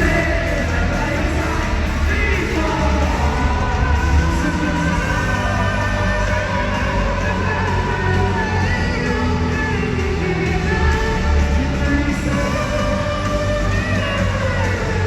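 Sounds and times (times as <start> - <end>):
person singing: 0.0 - 15.0
pop-rock band playing: 0.0 - 15.0.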